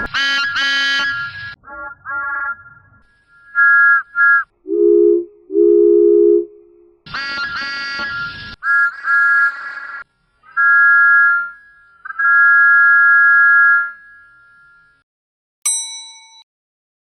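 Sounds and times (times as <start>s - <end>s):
two-note train whistle: 4.7s - 8.1s.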